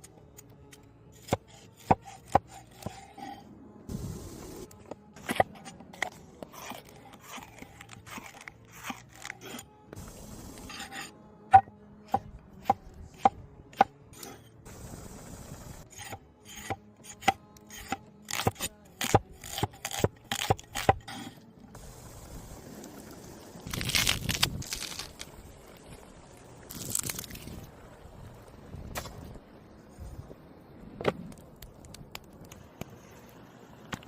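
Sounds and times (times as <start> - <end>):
knife scraping on board: 1.2 - 3.4, 10.7 - 11.1.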